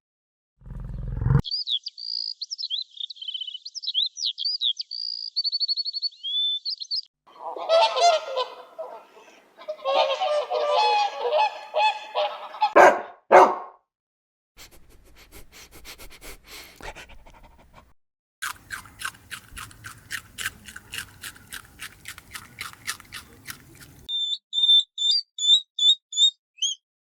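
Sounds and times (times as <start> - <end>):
songbird singing whistles and trills: 1.5 - 7.1, 24.1 - 26.9
waterfowl honking: 7.4 - 8.8, 9.6 - 12.8.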